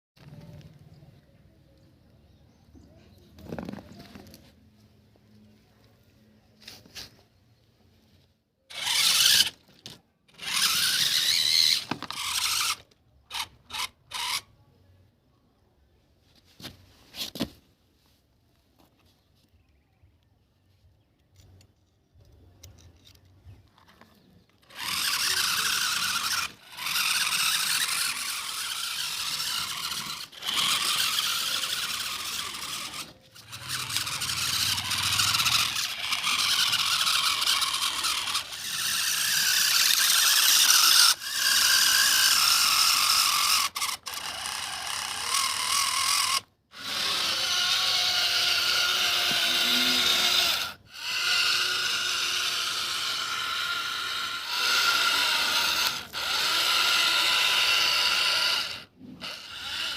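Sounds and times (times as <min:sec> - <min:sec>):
toy motor whirring: 0:03.4 - 0:04.6, 0:08.7 - 0:14.6, 0:21.3 - 0:59.9.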